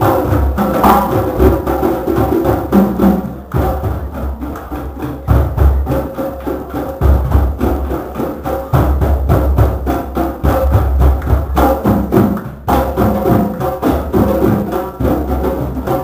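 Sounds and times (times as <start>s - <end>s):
drum circle playing: 0.0s - 16.0s.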